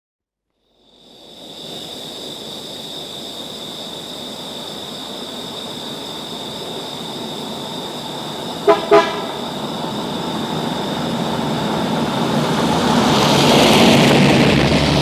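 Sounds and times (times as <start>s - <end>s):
road traffic noise: 6.6s - 15.0s
high-pitched whine: 6.9s - 15.0s.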